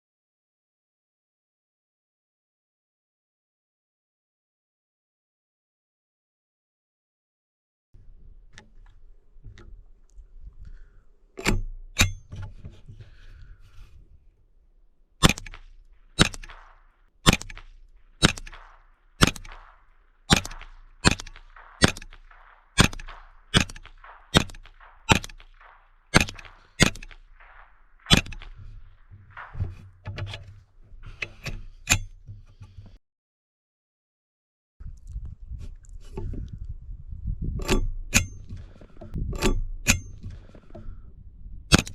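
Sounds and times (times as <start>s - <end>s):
rifle shots cracking: 15.2s - 30.8s.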